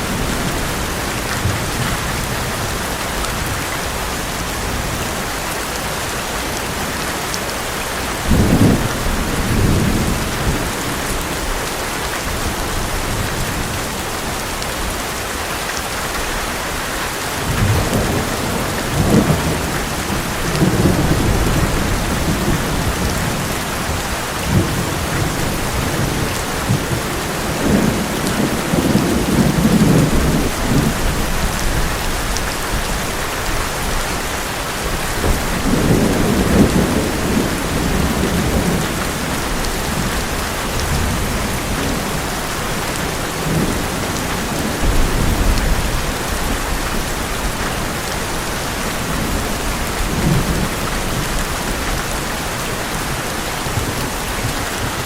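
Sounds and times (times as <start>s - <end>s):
heavy rain on a metal roof: 0.0s - 55.0s
thunder rumbling: 17.4s - 34.0s, 34.8s - 55.0s.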